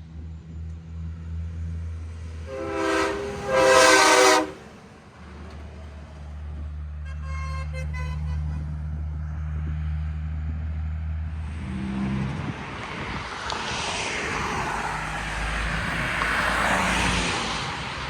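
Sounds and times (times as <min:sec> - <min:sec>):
vehicle passing close by: 0:09.5 - 0:18.0.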